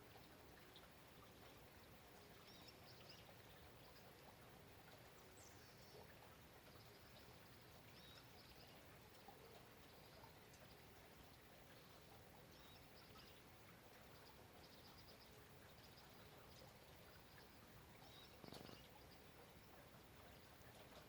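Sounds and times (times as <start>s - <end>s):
bird chirps: 18.0s - 19.2s.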